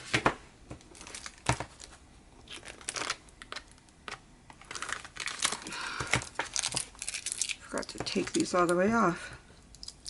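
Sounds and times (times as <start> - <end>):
paper crinkling: 0.8 - 8.8.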